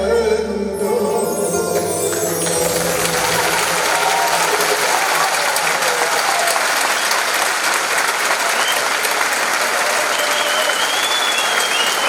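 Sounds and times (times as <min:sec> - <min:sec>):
audience applauding: 0:01.8 - 0:12.0.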